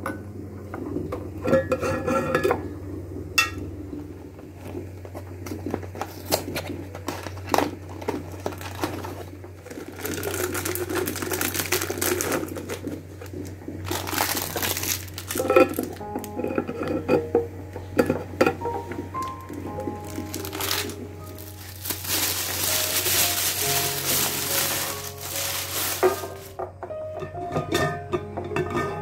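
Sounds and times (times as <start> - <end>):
low steady hum: 0.0 - 28.8
rustling: 19.2 - 26.6.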